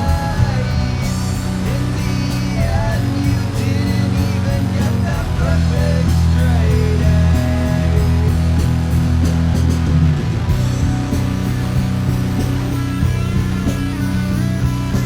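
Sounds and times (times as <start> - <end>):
bending lead guitar line: 0.0 - 15.0
rock guitars: 0.0 - 15.0
sustained bass notes: 0.0 - 15.0.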